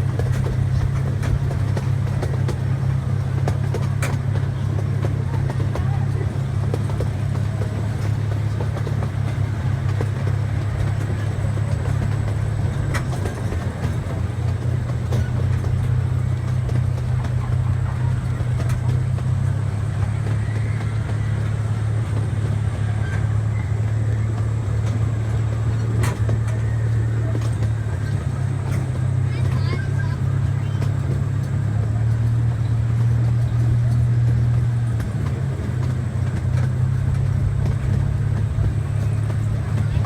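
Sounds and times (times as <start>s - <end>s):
train low rumble: 0.0s - 40.0s.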